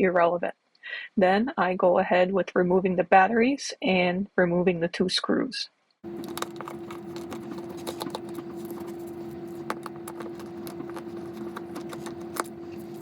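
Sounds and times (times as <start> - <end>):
steady hum: 6.0 - 13.0
small plastic clicks and scrapes: 6.1 - 13.0.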